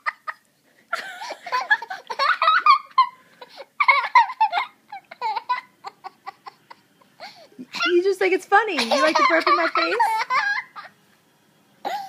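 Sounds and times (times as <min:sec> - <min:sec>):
high-pitched laughter: 0:00.0 - 0:06.7, 0:08.8 - 0:10.9.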